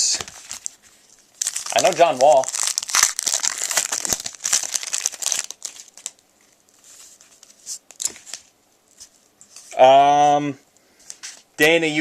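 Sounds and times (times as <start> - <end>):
wrapper crinkling and tearing: 0.0 - 6.2.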